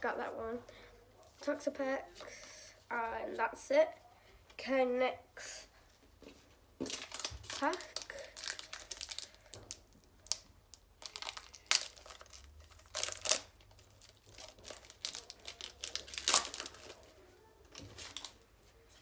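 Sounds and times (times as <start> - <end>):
wrapper tearing and crinkling: 6.9 - 17.1, 17.7 - 18.4.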